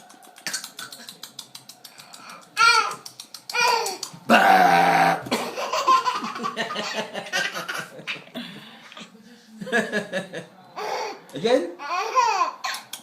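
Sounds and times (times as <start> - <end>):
man burping loudly: 4.3 - 5.4
laughter: 5.3 - 8.5, 9.6 - 10.5.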